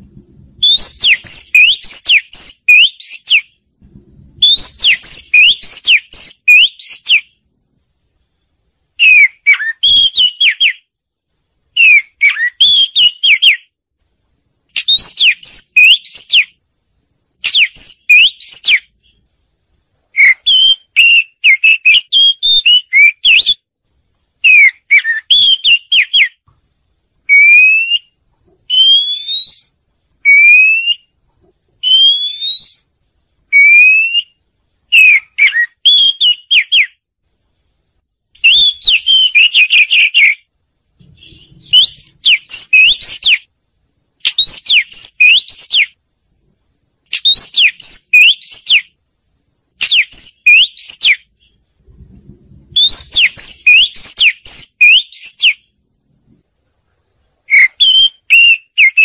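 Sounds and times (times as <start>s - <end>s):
songbird whistles and chattering: 0.6s - 3.6s, 4.4s - 7.4s, 9.0s - 10.9s, 11.7s - 13.7s, 14.7s - 16.6s, 17.4s - 19.2s, 20.1s - 23.6s, 24.4s - 26.4s, 27.3s - 31.1s, 31.8s - 32.9s, 33.5s - 37.0s, 38.4s - 43.5s, 44.2s - 46.0s, 47.1s - 49.0s, 49.8s - 51.6s, 52.7s - 55.7s, 57.4s - 59.0s.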